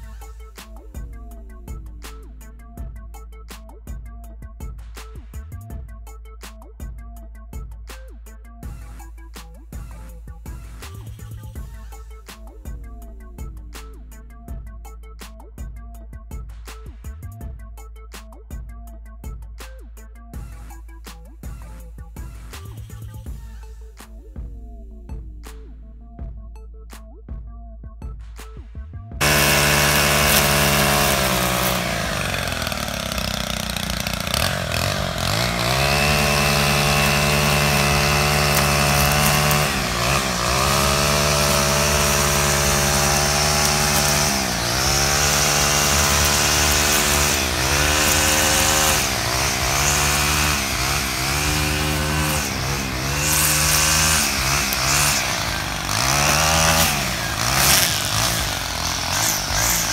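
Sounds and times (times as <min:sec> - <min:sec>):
two-stroke engine revving: 0:00.0 - 0:03.0, 0:10.5 - 0:14.6, 0:29.2 - 0:59.9.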